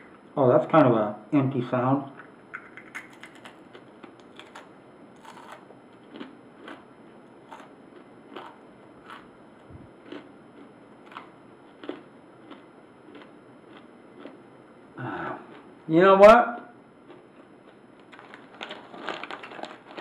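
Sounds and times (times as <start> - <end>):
crab shell crunching while chewing: 2.6 - 9.3, 10.0 - 14.4, 17.0 - 20.0.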